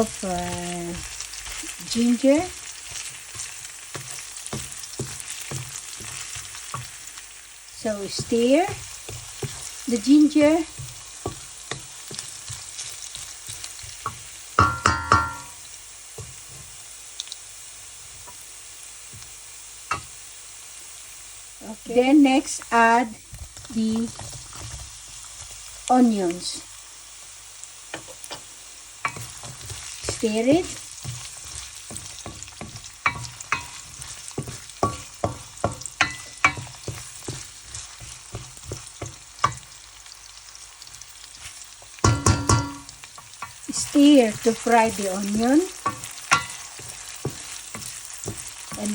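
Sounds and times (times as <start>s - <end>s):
spatula scraping a pan: 0.0s - 7.2s, 8.2s - 14.3s, 29.0s - 39.7s, 41.3s - 48.9s
ginger sizzling in hot oil: 0.0s - 48.9s
metallic clatter of utensil on pan: 14.6s - 15.5s, 42.0s - 43.5s.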